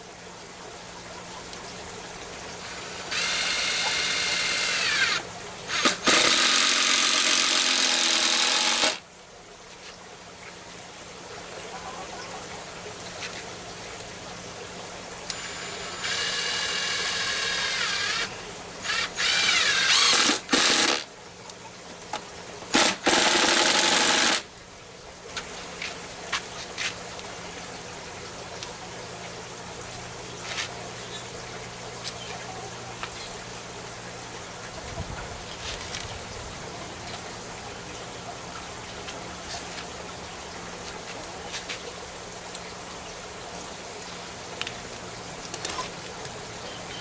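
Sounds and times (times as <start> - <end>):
electric drill whirring: 2.9 - 9.0, 15.3 - 21.1, 22.8 - 24.5.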